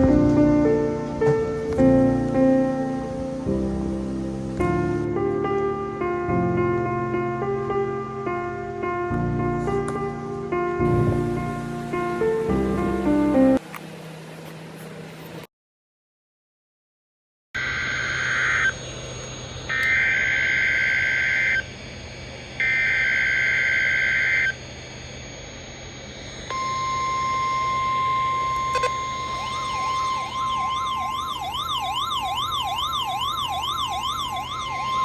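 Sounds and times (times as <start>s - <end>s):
low hum: 0.0s - 13.6s, 17.6s - 35.0s
shrill two-pitch data header: 17.6s - 35.0s
siren tone sweeping up and down: 17.6s - 35.0s
steady warning alarm tone: 17.6s - 35.0s.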